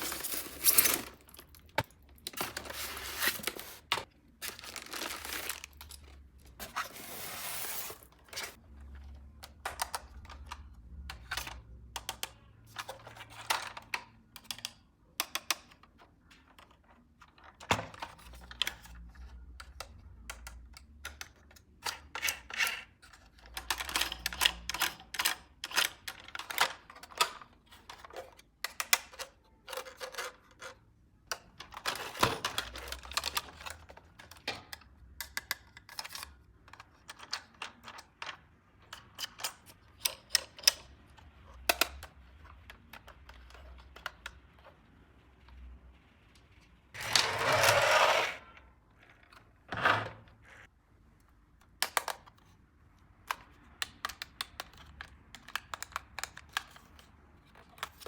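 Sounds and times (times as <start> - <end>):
plastic packaging rustling: 0.0 - 8.0.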